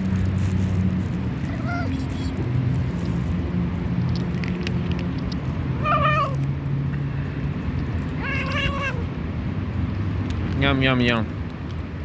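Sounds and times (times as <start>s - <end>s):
cat meowing: 1.5s - 2.0s, 5.8s - 6.5s, 8.1s - 9.2s.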